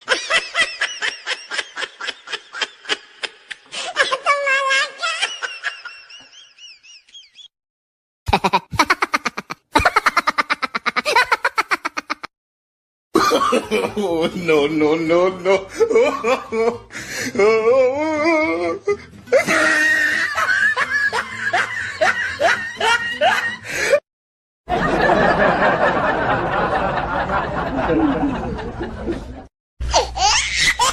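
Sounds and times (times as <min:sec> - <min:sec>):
crowd laughing: 0:00.0 - 0:03.8, 0:05.0 - 0:07.5, 0:08.3 - 0:12.3, 0:13.2 - 0:16.9, 0:19.3 - 0:24.0, 0:24.7 - 0:29.5
fast pulsing laugh bursts: 0:08.3 - 0:12.3
squeaky warbling laugh: 0:08.3 - 0:12.3.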